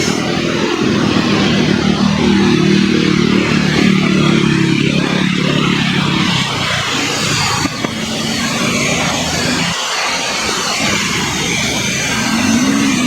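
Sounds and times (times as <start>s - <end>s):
low droning hum: 0.0s - 9.8s
jet engines rushing: 0.0s - 13.0s.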